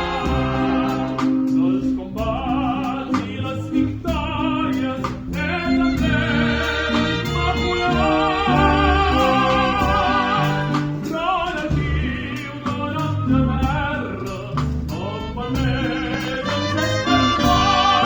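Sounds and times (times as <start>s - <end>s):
wind band playing melody: 0.0s - 1.7s, 5.6s - 11.1s, 15.1s - 18.0s
moving bass line: 0.0s - 18.0s.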